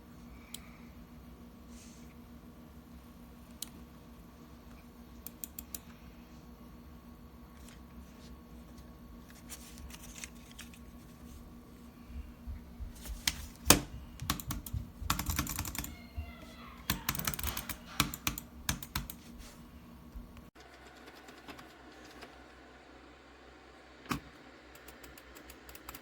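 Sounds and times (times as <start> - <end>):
computer keys clicking: 5.2 - 5.9, 13.2 - 16.0, 16.9 - 19.3, 24.8 - 26.0.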